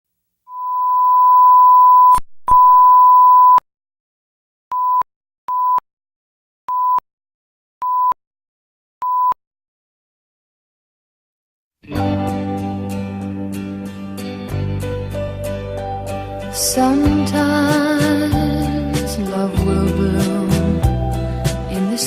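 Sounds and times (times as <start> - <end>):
electronic beep tone: 0.5 - 3.6.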